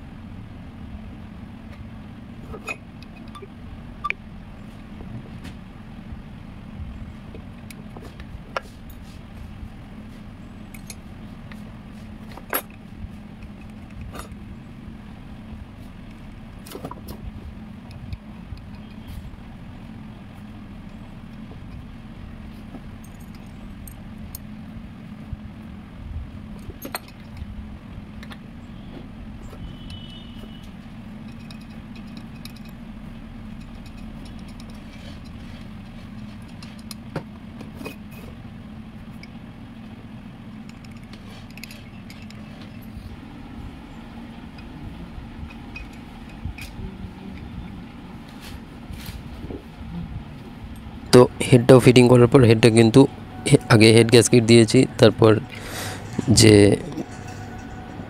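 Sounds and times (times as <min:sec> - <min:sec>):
low background hum: 0:00.0 - 0:58.0
hand tools clicking and clinking: 0:23.0 - 0:24.5, 0:26.6 - 0:27.5, 0:31.2 - 0:32.8, 0:33.5 - 0:37.0, 0:40.6 - 0:42.8, 0:44.5 - 0:46.8, 0:55.2 - 0:57.9.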